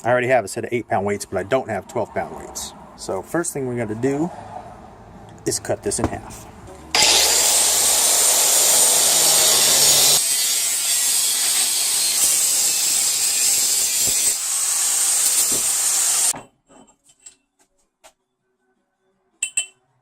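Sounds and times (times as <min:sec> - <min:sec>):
power saw cutting steel pipe: 0:07.0 - 0:16.3.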